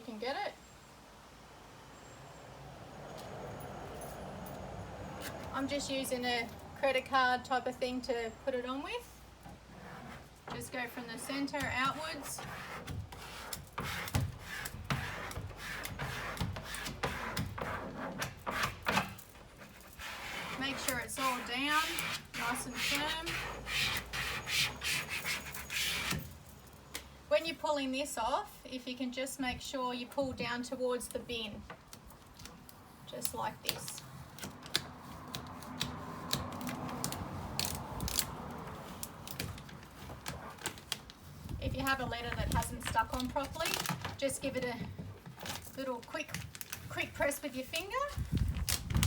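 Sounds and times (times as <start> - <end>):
tape peeling crackling rasp: 9.4 - 27.1, 30.9 - 49.0.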